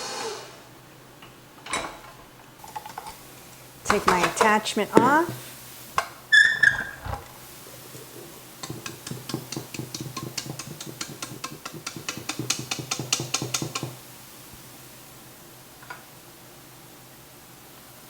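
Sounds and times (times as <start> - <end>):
utensil scraping mixer beater and bowl: 2.6 - 14.0.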